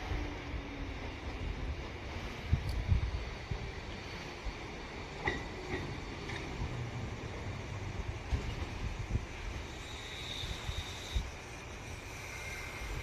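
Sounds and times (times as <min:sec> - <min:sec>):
train rumbling on track: 0:00.0 - 0:13.0.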